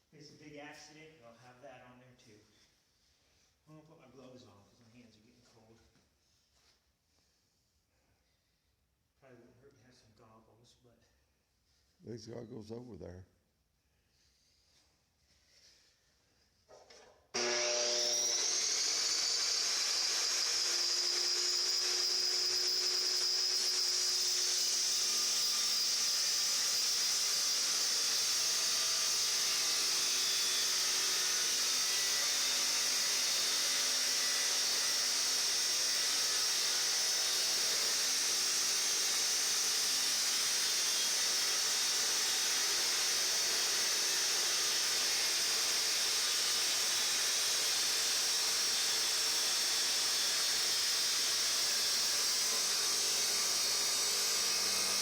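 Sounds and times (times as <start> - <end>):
abrasive saw grinding metal: 17.4 - 55.0.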